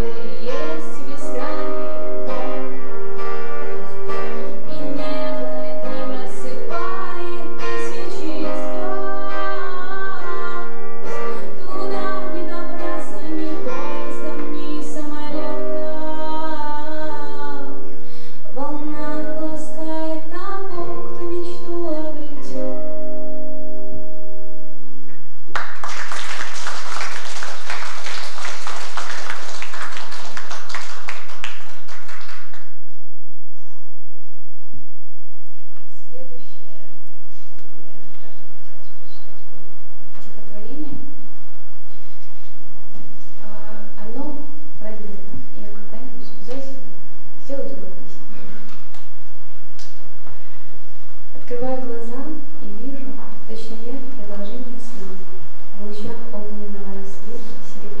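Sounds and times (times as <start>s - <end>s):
singing with plucked guitar: 0.0s - 2.8s, 4.1s - 17.9s
applause: 25.5s - 32.7s.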